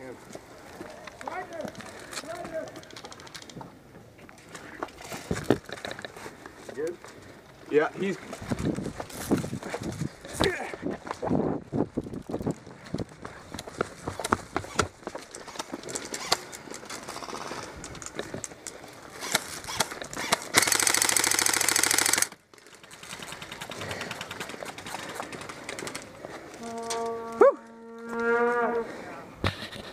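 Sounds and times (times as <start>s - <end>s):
airsoft gun full-auto burst: 19.2s - 22.4s.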